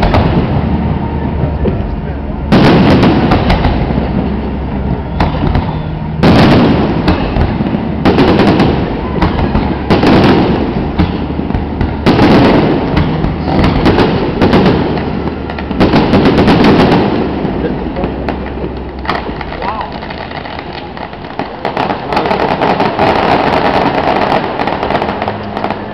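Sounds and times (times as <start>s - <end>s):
low rumble: 0.0s - 23.0s
rapid crackling reports: 0.0s - 25.9s.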